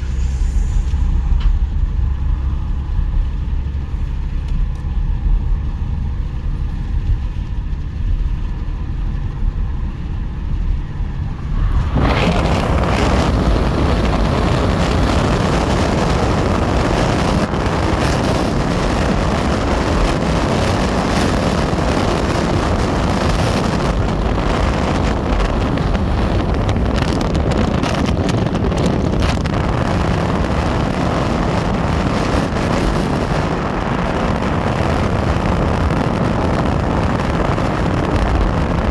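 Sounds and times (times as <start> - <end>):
train rushing past: 0.0 - 3.7, 10.7 - 16.7
locomotive engine rumble: 0.0 - 38.9
wind on microphone: 0.0 - 38.9.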